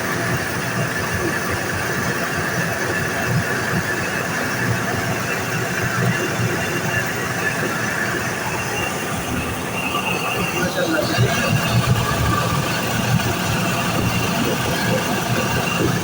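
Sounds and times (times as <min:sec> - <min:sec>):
air conditioner squealing: 0:04.6 - 0:16.0.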